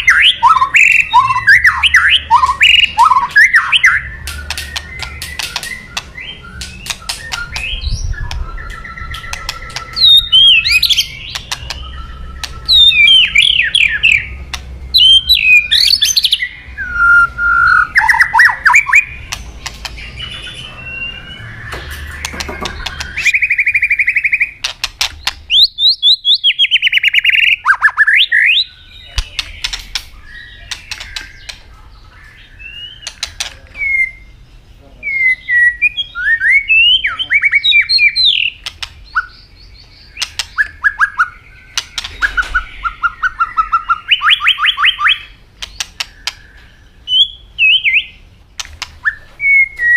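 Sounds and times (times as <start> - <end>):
songbird singing whistled phrases: 0.0 - 24.6, 25.5 - 31.6, 32.2 - 34.4, 35.0 - 48.2, 49.0 - 49.9
sharp bird clicking notes: 2.3 - 14.8, 18.0 - 20.4, 21.7 - 25.7, 29.1 - 31.8, 32.8 - 33.8, 37.8 - 39.3, 40.1 - 46.7, 48.6 - 49.2.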